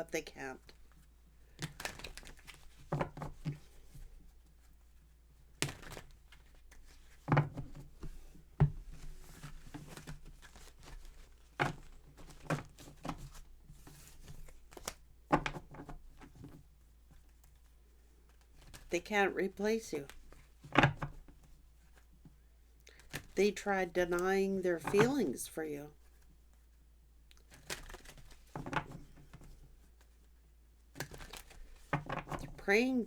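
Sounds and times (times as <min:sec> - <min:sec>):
cards rustling: 0:00.6 - 0:04.1, 0:27.4 - 0:30.2, 0:30.9 - 0:33.0.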